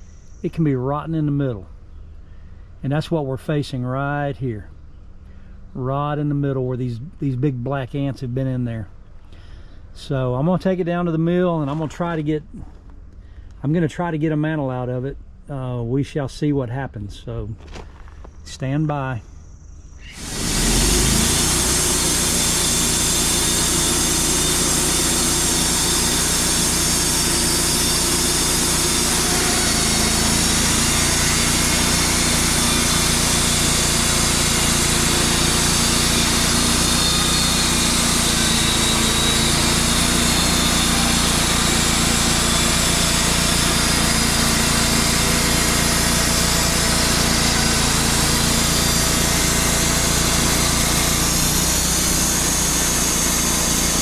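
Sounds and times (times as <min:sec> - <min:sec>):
band sawmill running: 0:20.0 - 0:54.0.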